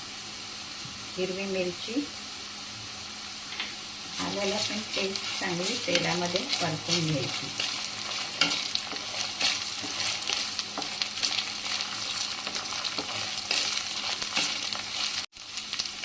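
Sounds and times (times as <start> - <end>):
food sizzling in hot oil: 0.0 - 16.0
spatula scraping and tapping pan: 3.6 - 15.3.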